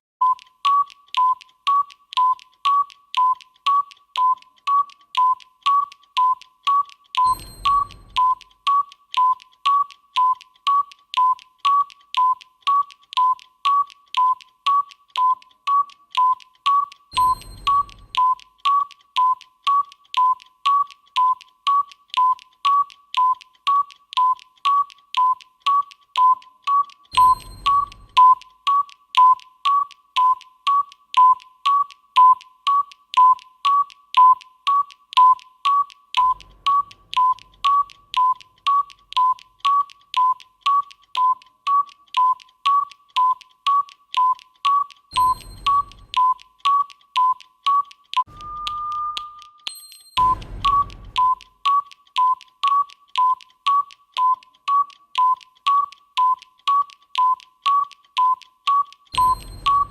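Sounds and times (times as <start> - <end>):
timer beeps with clicks: 0.2 - 59.9
faint high chime: 7.2 - 8.3, 17.1 - 18.2, 27.1 - 28.2, 45.1 - 46.1, 48.3 - 51.0, 59.2 - 59.9
low whoosh: 50.2 - 51.3.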